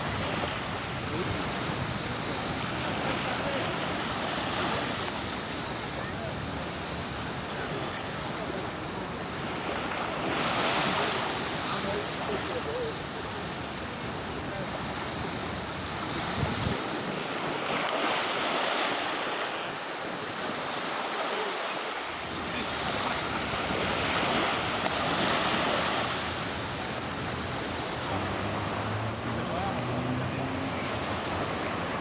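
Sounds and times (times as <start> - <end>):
wind buffeting microphone: 0.0 - 20.9
sea waves breaking: 0.0 - 32.0.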